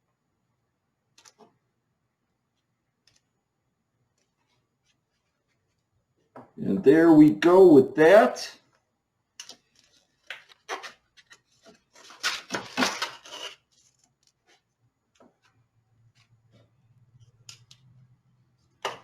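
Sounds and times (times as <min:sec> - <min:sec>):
rubbing and scraping of parts: 0:09.4 - 0:17.8.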